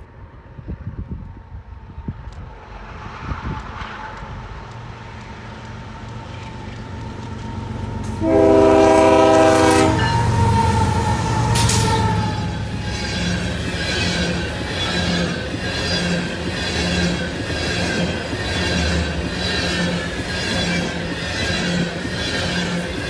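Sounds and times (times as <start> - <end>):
locomotive engine and wheel rumble: 0.0 - 23.0
train horn blast: 8.0 - 13.5.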